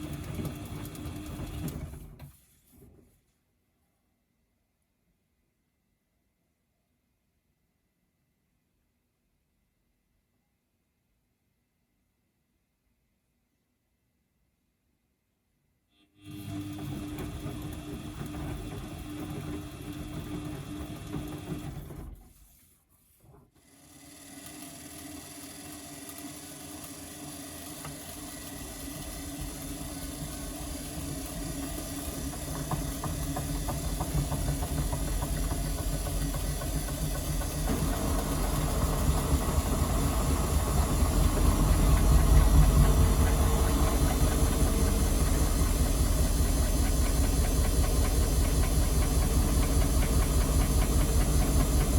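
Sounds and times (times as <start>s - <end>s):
washing machine motor crackling: 0.0s - 2.3s, 16.3s - 22.4s, 24.0s - 51.9s.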